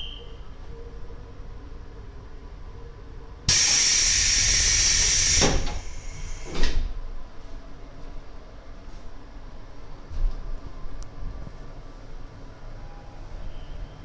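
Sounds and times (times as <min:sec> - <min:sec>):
hiss of compressed air: 0:03.5 - 0:06.8
train doors thudding shut: 0:03.5 - 0:07.0.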